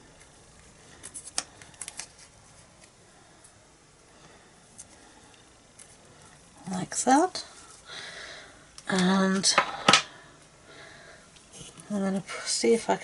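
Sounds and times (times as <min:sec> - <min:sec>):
paper rustling: 0:00.6 - 0:02.9.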